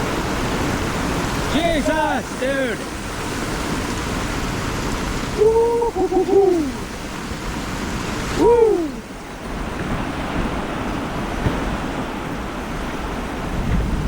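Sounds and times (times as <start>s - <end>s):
heavy rain pouring: 0.0s - 14.0s
wind: 0.0s - 14.0s
man whooping: 5.4s - 6.9s, 8.3s - 9.1s.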